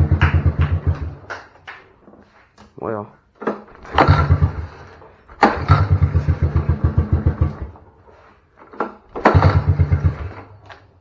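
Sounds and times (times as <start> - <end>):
engine sputtering and running roughly: 0.0 - 1.3, 3.8 - 8.0, 9.2 - 10.8.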